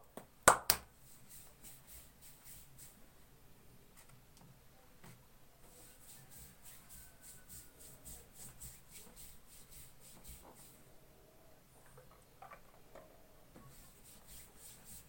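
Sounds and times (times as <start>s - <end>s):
hands rubbing skin: 0.8s - 3.0s, 5.7s - 10.9s, 13.7s - 15.0s.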